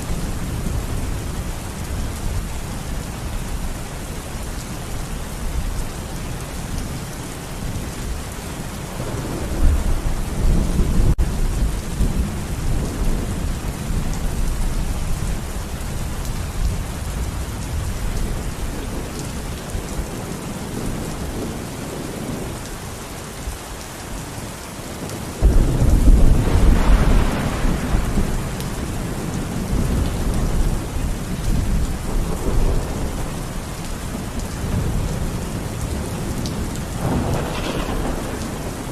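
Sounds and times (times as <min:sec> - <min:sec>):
steady rain falling: 0:00.0 - 0:38.9
rolling thunder: 0:08.6 - 0:15.5, 0:25.4 - 0:33.4, 0:34.1 - 0:38.9.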